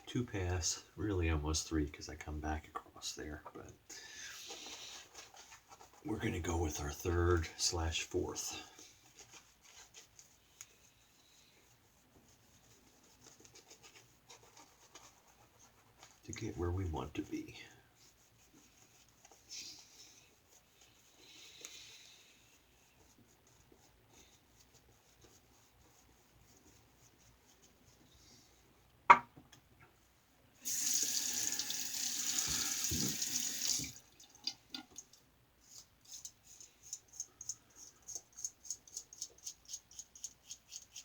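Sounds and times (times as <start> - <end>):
tap water running: 30.6 - 35.1.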